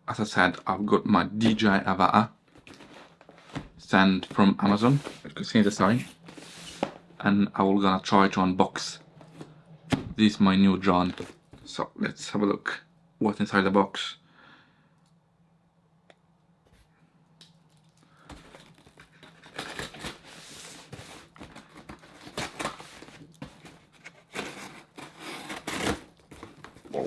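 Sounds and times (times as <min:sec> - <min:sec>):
packaging crinkling and tearing: 0:17.7 - 0:27.0.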